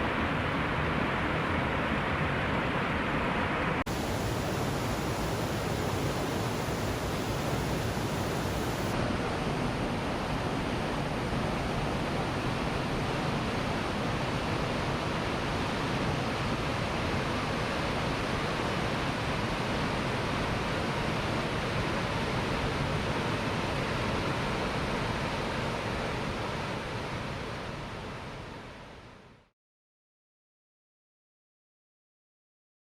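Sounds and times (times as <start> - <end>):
waterfall rushing: 3.9 - 9.0.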